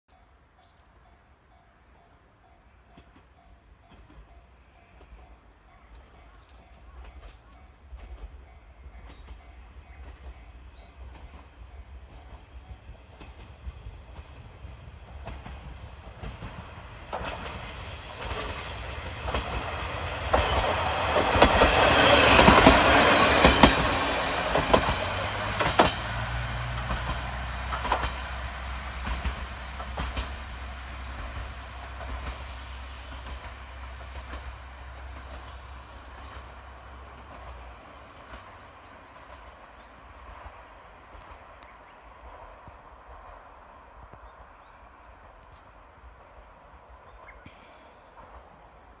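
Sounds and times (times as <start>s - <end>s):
diesel railcar passing: 0.3s - 49.0s
wheels clicking over rail joints: 13.1s - 30.6s
high wheel squeal: 22.8s - 25.5s.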